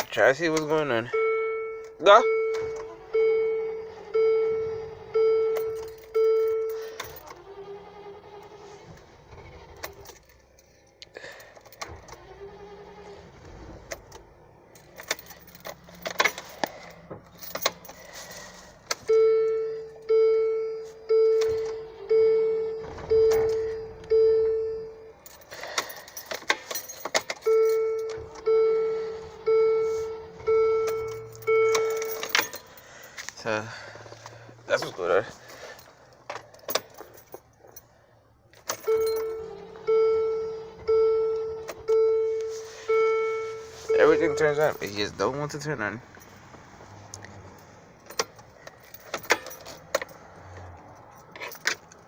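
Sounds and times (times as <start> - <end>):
dashboard warning chime dinging: 0.2 - 8.6, 18.8 - 25.5, 26.8 - 32.9, 38.7 - 46.9
keys rattling: 5.4 - 7.6, 9.6 - 12.7, 13.8 - 20.1, 22.7 - 28.6, 29.2 - 39.8, 41.6 - 52.0.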